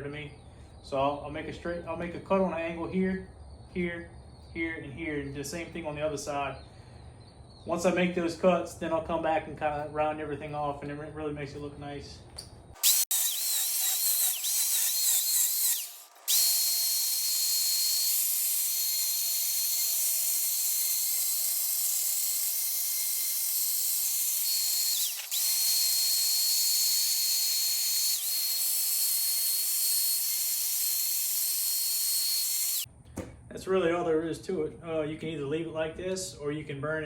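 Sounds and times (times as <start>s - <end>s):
electric chainsaw cutting wood: 12.8s - 32.9s.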